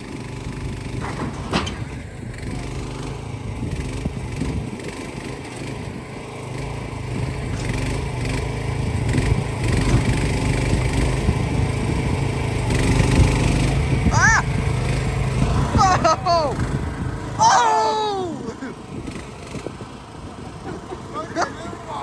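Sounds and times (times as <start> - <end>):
excavator engine running: 0.0 - 22.0.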